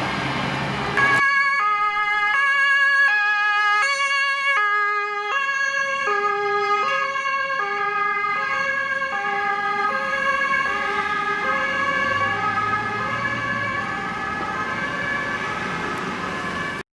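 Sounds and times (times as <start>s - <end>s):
two-tone sirens: 1.0s - 16.9s
truck engine rumble: 7.0s - 16.8s.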